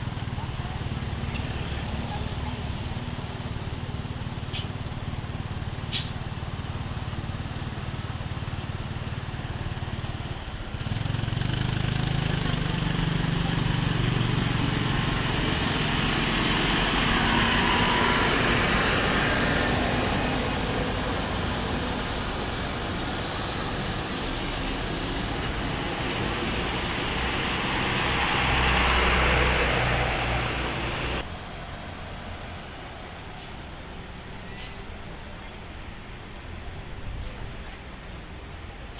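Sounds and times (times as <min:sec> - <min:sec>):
vehicle engine running: 0:00.0 - 0:38.9
vehicle passing by: 0:10.7 - 0:34.4.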